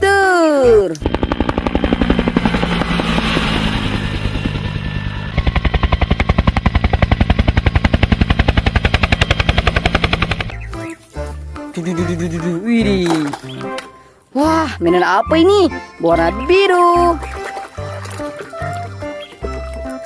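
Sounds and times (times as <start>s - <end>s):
helicopter rotor chopping: 0.6s - 10.8s.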